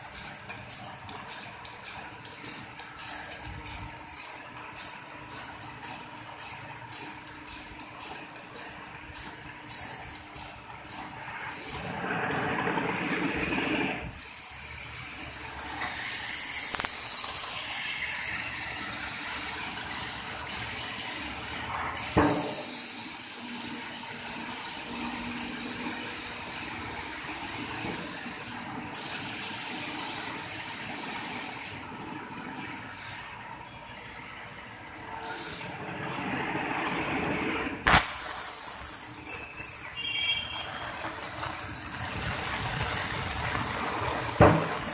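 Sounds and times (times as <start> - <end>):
high hiss of air jet: 9.2 - 12.4, 14.1 - 25.6, 37.8 - 44.9
sharp knock: 22.1 - 22.8.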